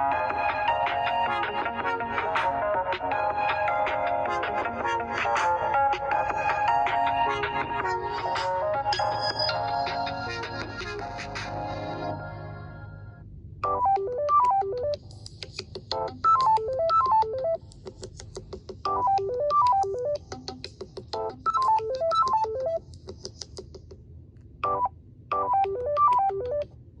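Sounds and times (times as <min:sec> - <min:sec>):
phone ringtone melody: 0:13.6 - 0:15.0, 0:16.0 - 0:17.6, 0:18.9 - 0:20.2, 0:21.2 - 0:22.8, 0:24.6 - 0:26.6.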